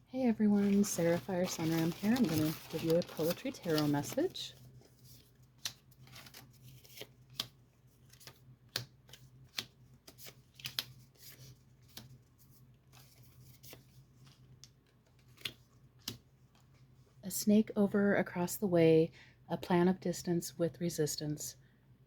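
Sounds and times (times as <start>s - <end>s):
cards being shuffled: 0.6s - 16.8s.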